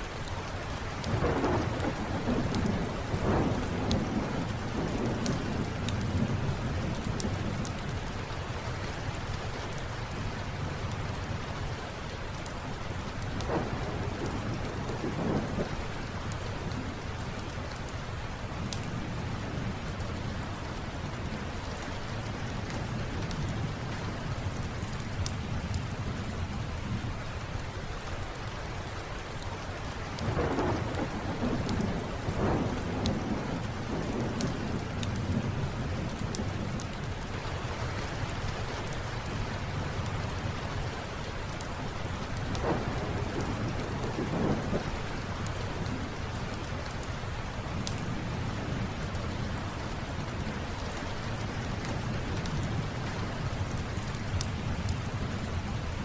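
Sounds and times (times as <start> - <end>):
steady rain: 0.0 - 56.0
thunder rumbling: 1.0 - 7.9, 13.1 - 17.4, 30.2 - 37.3, 42.1 - 49.6
wood fire crackling: 29.2 - 49.5.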